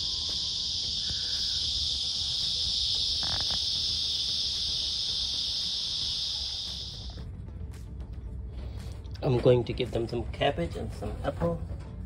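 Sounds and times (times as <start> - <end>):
insect chorus drone: 0.0 - 7.3.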